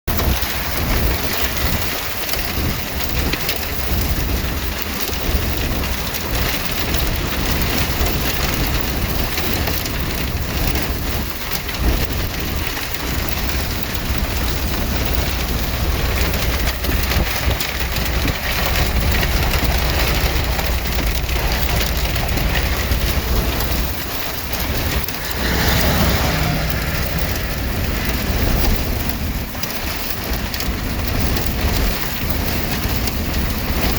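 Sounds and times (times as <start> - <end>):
heavy rain pouring: 0.1 - 33.9
deep rumble: 13.0 - 33.8.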